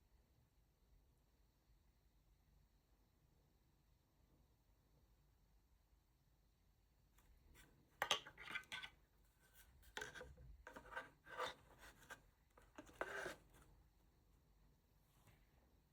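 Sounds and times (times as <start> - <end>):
objects rubbing and scraping: 8.0 - 13.7.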